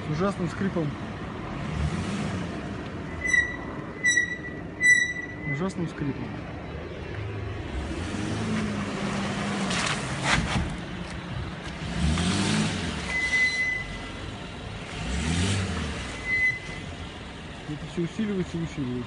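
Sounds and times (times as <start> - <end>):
brake squeal: 3.0 - 5.8, 12.8 - 14.2, 15.0 - 17.0.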